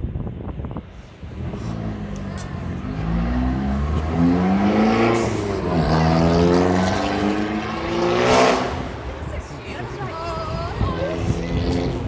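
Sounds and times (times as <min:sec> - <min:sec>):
vehicle accelerating past: 0:01.3 - 0:09.0.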